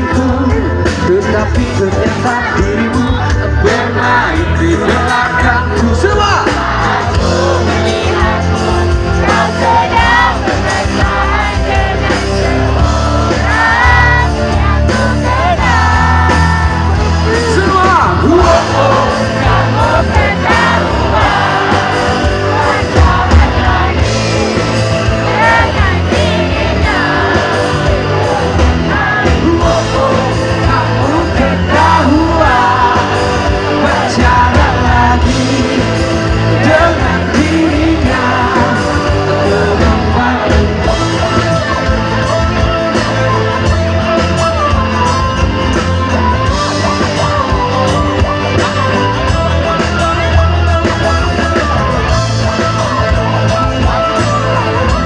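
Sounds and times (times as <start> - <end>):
man singing: 0.0 - 45.0
live rock band playing: 0.0 - 55.0.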